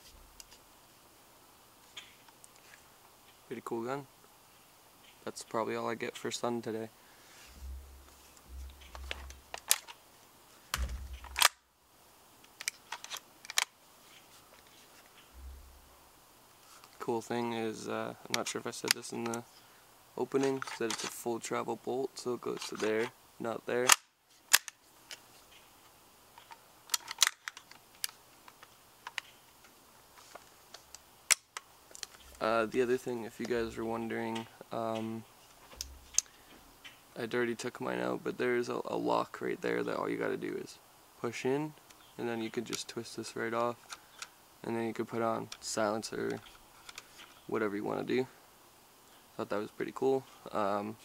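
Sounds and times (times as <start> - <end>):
airsoft rifle mechanical clicks: 8.6 - 10.0, 10.7 - 11.6, 12.4 - 13.8, 23.8 - 25.6, 26.4 - 29.8.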